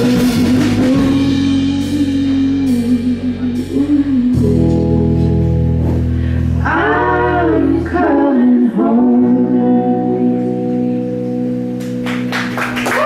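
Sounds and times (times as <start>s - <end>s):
person singing: 0.0s - 5.5s, 6.6s - 11.4s
live band playing chords: 0.0s - 13.0s.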